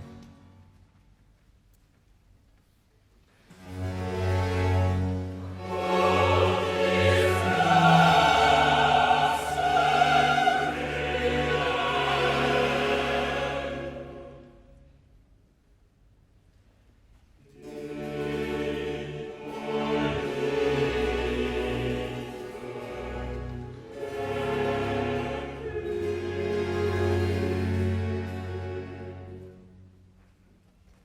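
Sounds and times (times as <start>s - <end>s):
baroque opera orchestra: 3.4s - 15.2s, 17.4s - 30.4s
opera singing and chorus: 5.6s - 14.8s, 17.5s - 29.5s.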